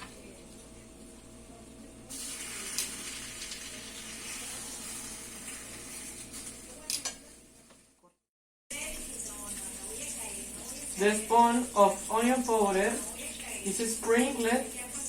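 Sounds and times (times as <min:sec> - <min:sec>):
peppers sizzling in a frying pan: 0:02.1 - 0:07.4, 0:08.7 - 0:15.0.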